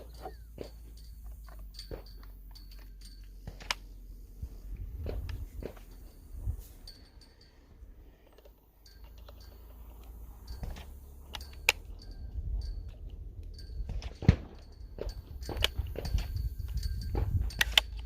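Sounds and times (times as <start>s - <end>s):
sharp clicks and knocks: 0.0s - 4.0s, 8.2s - 18.0s
low rumble: 0.0s - 18.0s.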